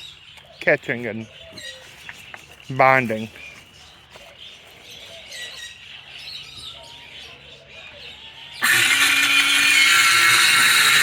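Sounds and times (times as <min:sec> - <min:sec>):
birds chirping: 0:00.0 - 0:11.0
power saw cutting: 0:08.6 - 0:11.0.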